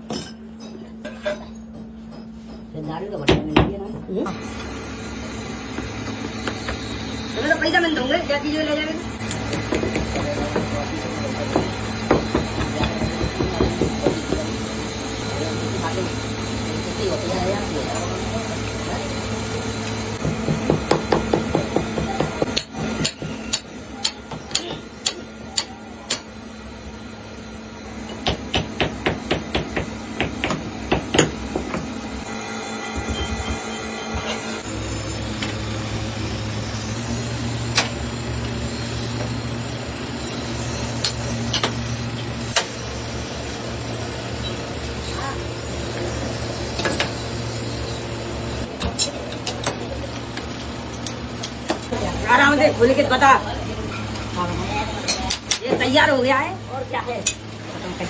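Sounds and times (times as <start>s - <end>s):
hand hammer striking metal: 9.2s - 10.8s, 20.2s - 26.3s, 28.1s - 31.9s.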